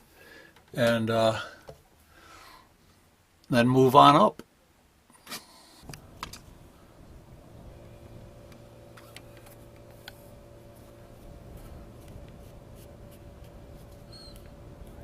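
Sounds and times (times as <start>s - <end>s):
faint hum: 5.6s - 15.0s.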